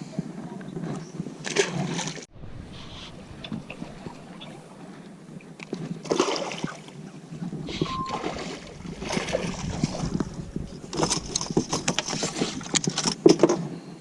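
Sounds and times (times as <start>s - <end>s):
water noise: 0.0s - 13.6s
wind: 0.0s - 14.0s
short beep: 7.8s - 8.4s.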